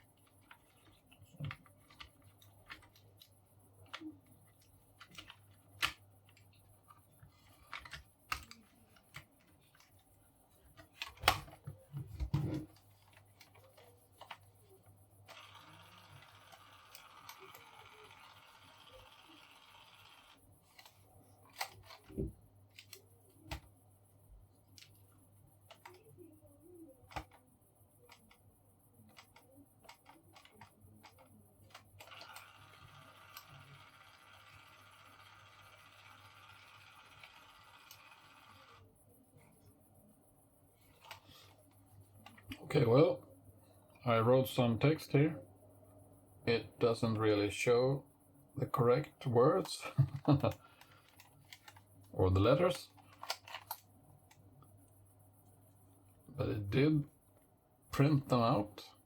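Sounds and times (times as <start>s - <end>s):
label maker printing whir: 13.8s - 20.9s, 29.9s - 39.0s.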